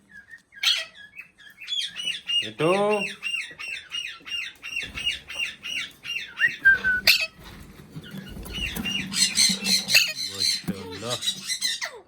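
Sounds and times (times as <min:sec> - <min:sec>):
parrot chirping squawks: 0:00.1 - 0:07.4, 0:08.4 - 0:12.0
parrot whistle: 0:06.4 - 0:07.4.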